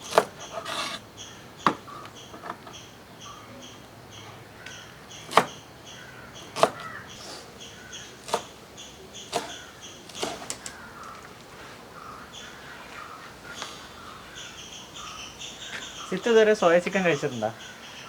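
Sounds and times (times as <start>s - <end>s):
knife chopping on wooden board: 0.0s - 1.0s, 5.2s - 5.6s, 6.4s - 7.0s, 8.2s - 8.5s, 9.3s - 10.7s
faint high chirping: 0.0s - 11.3s.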